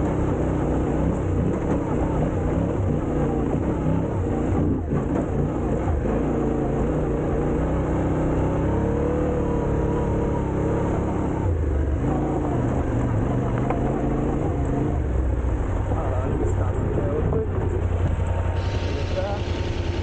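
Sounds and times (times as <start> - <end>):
road rumble: 0.0 - 20.0
vehicle engine running: 0.0 - 20.0.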